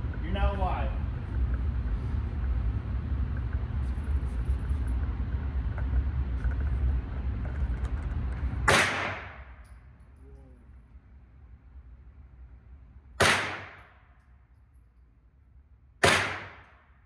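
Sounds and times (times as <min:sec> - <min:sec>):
low rumble: 0:00.0 - 0:16.0
gunshot: 0:08.7 - 0:09.6, 0:13.2 - 0:14.0, 0:16.0 - 0:16.9.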